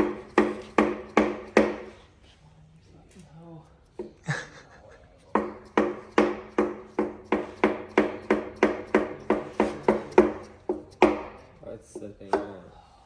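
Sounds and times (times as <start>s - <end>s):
hammer striking metal: 0.0s - 2.0s, 5.3s - 12.5s.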